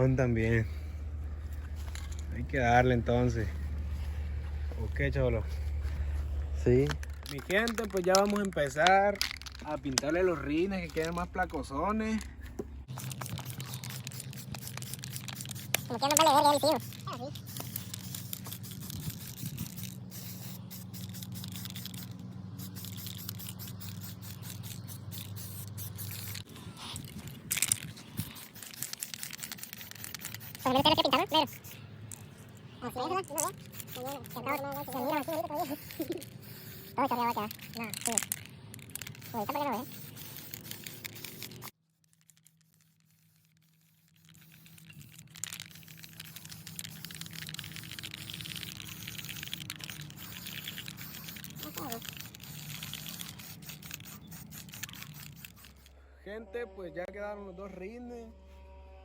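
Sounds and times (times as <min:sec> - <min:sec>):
steady low hum: 0:00.0 - 0:59.0
spray paint hissing: 0:00.7 - 0:11.6, 0:12.8 - 0:56.0
scattered clicks: 0:06.8 - 0:10.2.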